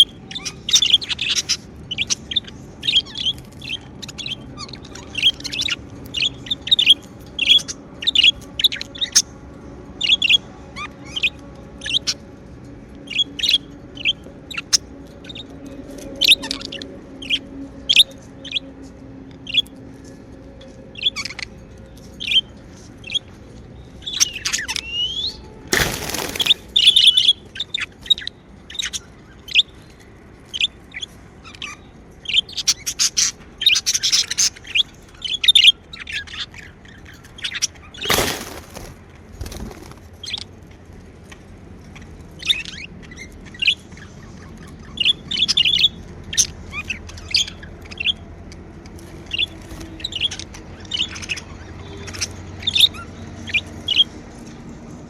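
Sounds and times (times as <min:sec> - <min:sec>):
budgerigars chirping: 0:00.0 - 0:09.2, 0:24.0 - 0:29.8, 0:30.5 - 0:38.9, 0:42.0 - 0:48.2
rustling: 0:38.0 - 0:40.0.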